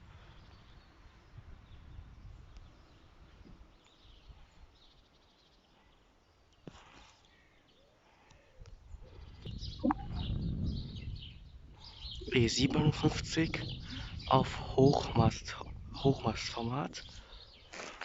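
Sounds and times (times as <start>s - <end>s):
faint bird chirps: 0.1s - 12.8s.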